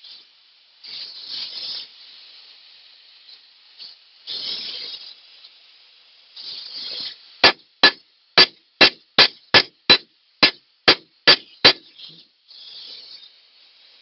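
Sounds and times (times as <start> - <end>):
hammer striking metal: 7.4 - 11.8.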